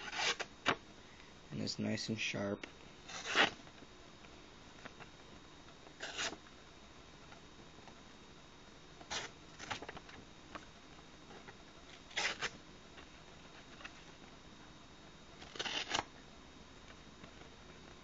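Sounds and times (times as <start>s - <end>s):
pocketknife scrapes and rustles: 0.0s - 0.5s, 3.1s - 3.6s, 6.0s - 6.4s, 9.1s - 9.8s, 12.1s - 12.6s, 15.4s - 16.1s.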